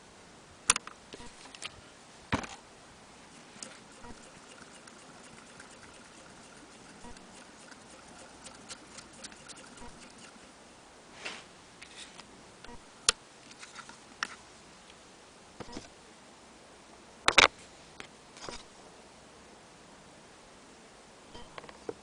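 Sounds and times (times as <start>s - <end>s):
sewing machine parts clicking: 3.3s - 10.5s.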